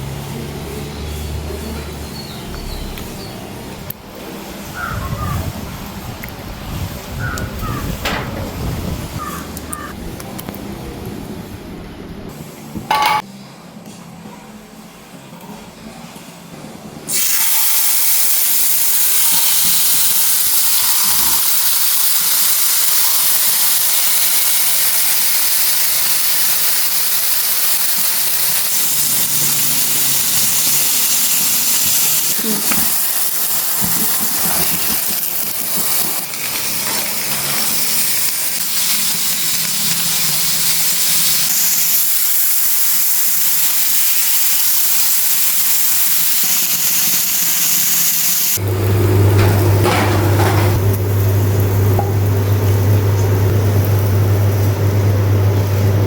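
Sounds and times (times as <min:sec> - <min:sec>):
fish sizzling in hot oil: 0:17.1 - 0:49.4.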